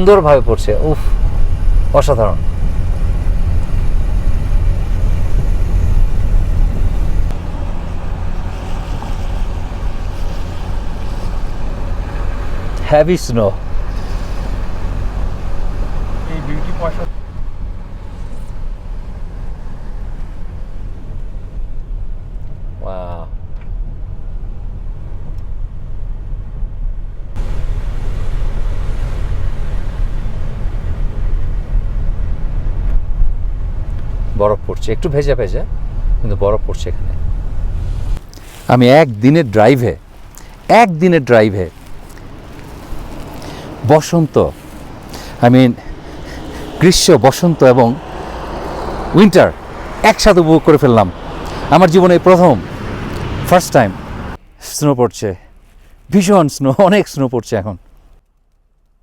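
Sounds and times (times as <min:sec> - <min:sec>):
car engine and road noise: 0:00.0 - 0:59.0
wind and tyre noise: 0:00.0 - 0:59.0.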